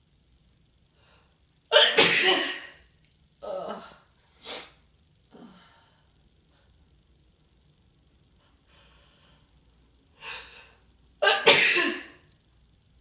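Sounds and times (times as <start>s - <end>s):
person breathing: 0.9s - 1.4s, 8.4s - 10.9s
person sneezing: 1.8s - 2.8s, 11.2s - 12.2s.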